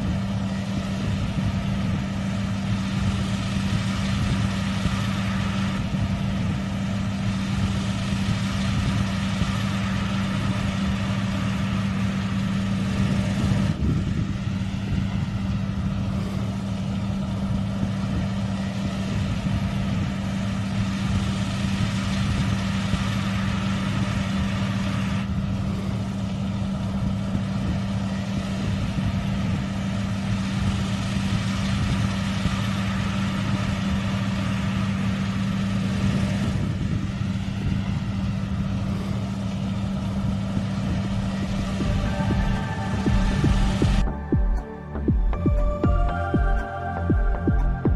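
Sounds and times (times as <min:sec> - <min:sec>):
combine harvester engine running: 0:00.0 - 0:47.9.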